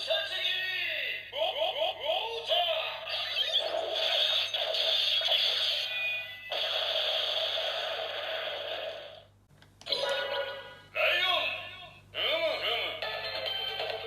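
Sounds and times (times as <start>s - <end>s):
toy music: 12.4s - 14.0s.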